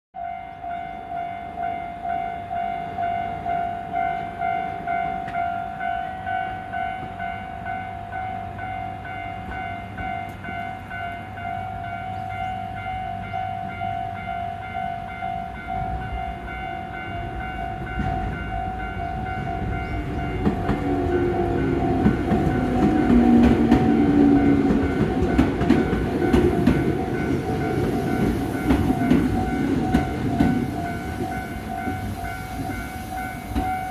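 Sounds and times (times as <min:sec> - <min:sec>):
crossing electronic warning bell: 0:00.2 - 0:33.9
train wheels rumbling and clattering: 0:15.6 - 0:33.9.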